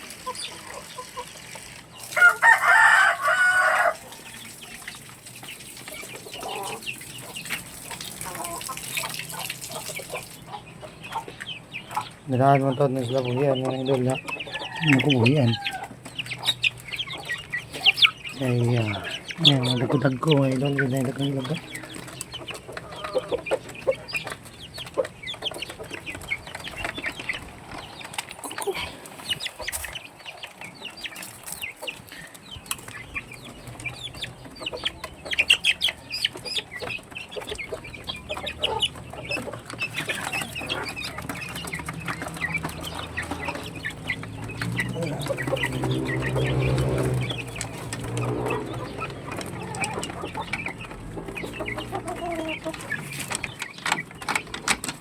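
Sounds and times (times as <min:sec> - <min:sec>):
chickens clucking: 0:00.0 - 0:55.0.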